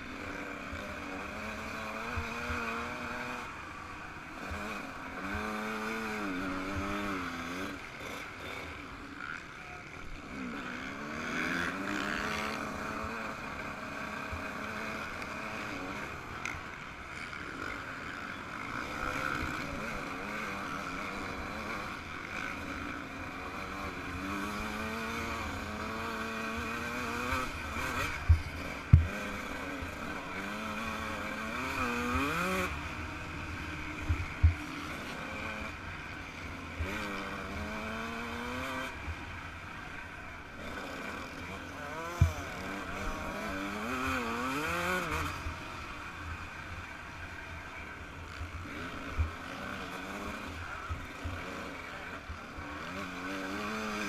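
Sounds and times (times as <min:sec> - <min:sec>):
motocross engine revving: 0:04.4 - 0:09.0, 0:10.2 - 0:16.6, 0:17.2 - 0:39.5, 0:40.5 - 0:45.8, 0:48.3 - 0:51.8, 0:52.4 - 0:54.0.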